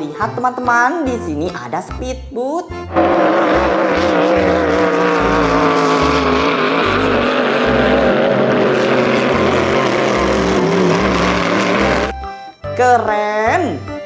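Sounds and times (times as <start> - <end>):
speedboat motor droning: 2.9 - 12.2
pulsing low bass: 2.9 - 12.3.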